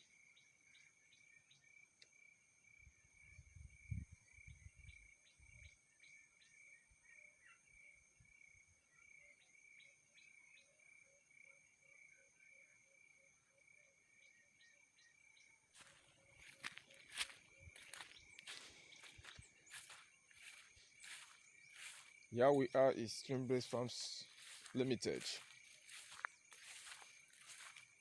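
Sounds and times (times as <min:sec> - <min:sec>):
high insect drone: 0:13.8 - 0:28.0.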